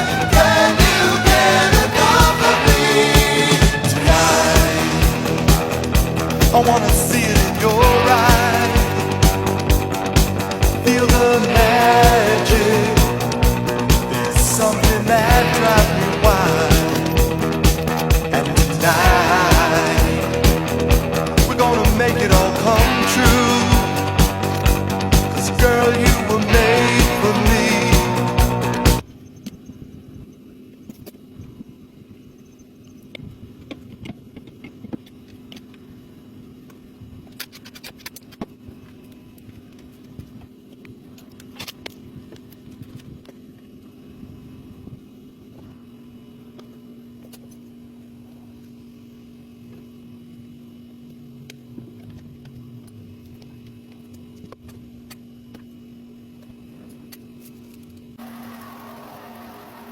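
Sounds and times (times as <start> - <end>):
car engine idling: 0.0 - 29.0.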